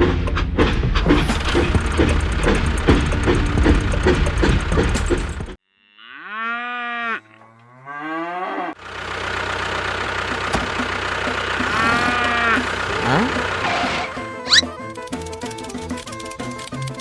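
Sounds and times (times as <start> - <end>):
motor running with clatter: 0.0 - 5.6, 8.8 - 17.0
cow mooing: 5.7 - 8.8, 11.6 - 14.7.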